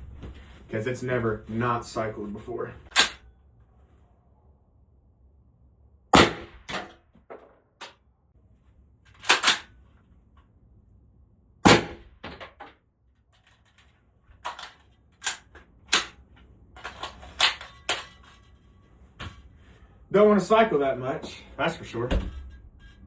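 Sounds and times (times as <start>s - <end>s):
metallic clicks and clatter: 12.4s - 18.7s.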